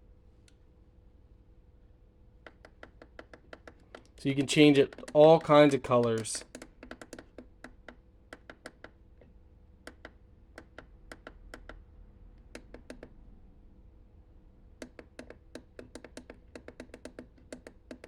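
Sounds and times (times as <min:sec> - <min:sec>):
plastic buttons clicking: 0:02.5 - 0:07.2.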